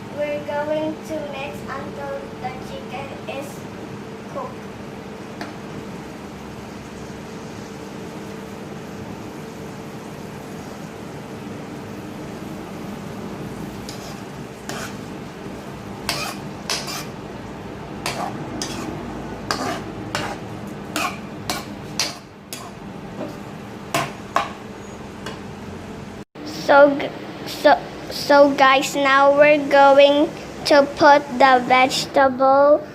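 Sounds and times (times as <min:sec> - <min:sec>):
utensil scraping a pan: 0:13.8 - 0:15.1, 0:16.0 - 0:17.2, 0:18.0 - 0:22.8.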